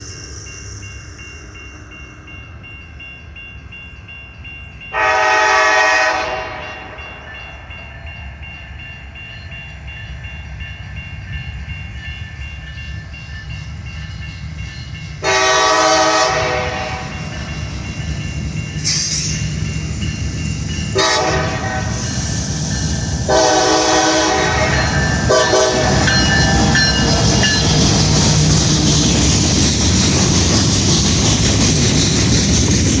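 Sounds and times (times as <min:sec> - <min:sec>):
freight train rumbling: 0:00.0 - 0:33.0
locomotive air horn blasts: 0:04.9 - 0:07.0, 0:15.2 - 0:17.2, 0:21.0 - 0:22.0, 0:23.3 - 0:26.6.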